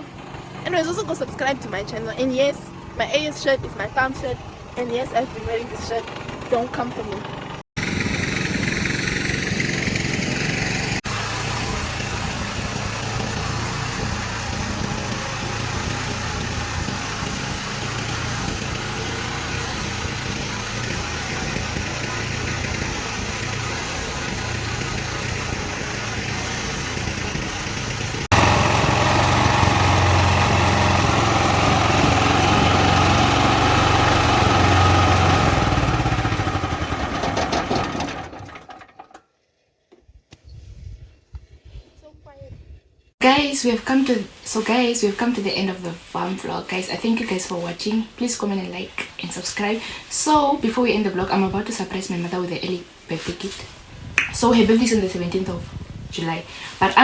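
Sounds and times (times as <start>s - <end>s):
motor running: 5.4s - 39.2s.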